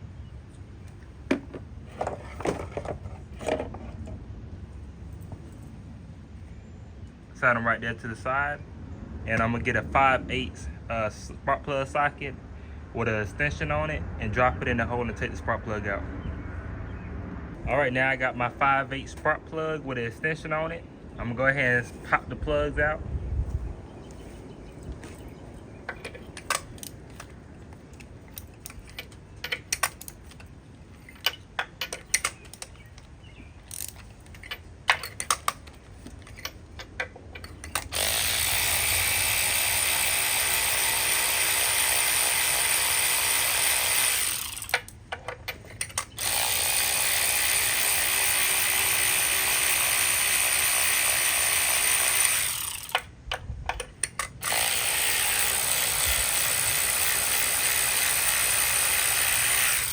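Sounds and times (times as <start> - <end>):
tool knocks: 1.3 - 3.8
ratchet clicks: 33.7 - 59.9
power tool running: 37.8 - 44.8, 46.2 - 53.0, 54.4 - 59.9.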